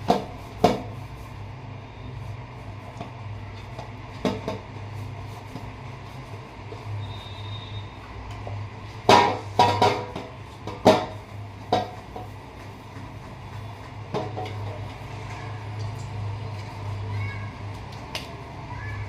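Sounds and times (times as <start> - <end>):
kitchen knocks and clatters: 0.0 - 1.0, 3.0 - 4.8, 9.0 - 16.7.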